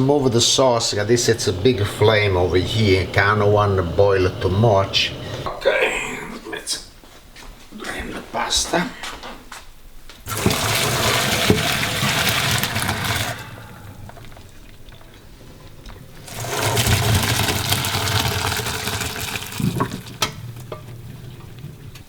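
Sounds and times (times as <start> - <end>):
water pouring into a colander: 10.3 - 15.1, 16.1 - 20.9.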